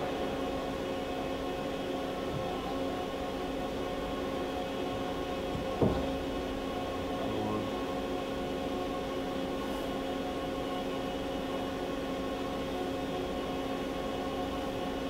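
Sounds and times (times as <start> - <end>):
machining center hum and whine: 0.0 - 15.0.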